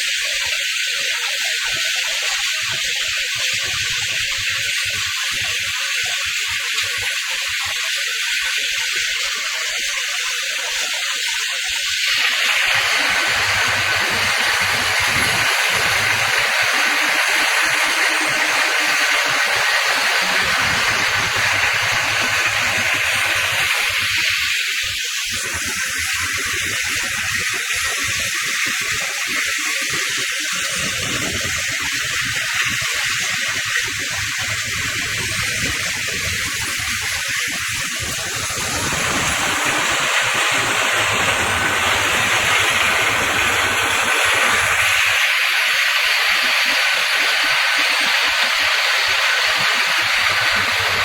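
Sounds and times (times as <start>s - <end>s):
wood chipper running: 12.0s - 24.6s, 35.1s - 51.0s.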